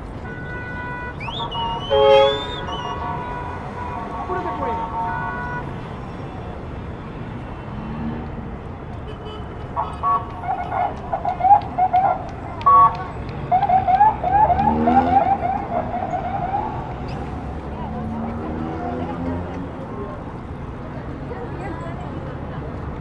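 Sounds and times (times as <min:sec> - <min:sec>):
street traffic: 0:00.0 - 0:23.0
car alarm blasts and chirps: 0:01.2 - 0:04.0, 0:10.0 - 0:17.2.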